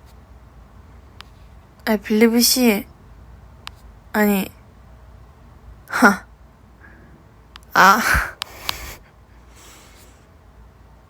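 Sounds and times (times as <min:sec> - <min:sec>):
woman's wordless vocal bursts: 0:05.9 - 0:06.3, 0:07.7 - 0:09.0.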